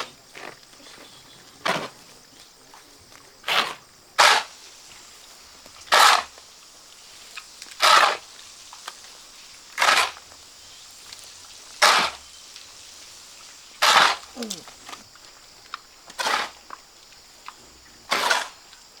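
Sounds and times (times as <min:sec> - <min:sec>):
shovel scraping cement mix: 0:01.6 - 0:02.1, 0:09.8 - 0:10.2, 0:13.8 - 0:15.0, 0:16.2 - 0:16.6, 0:18.1 - 0:18.6.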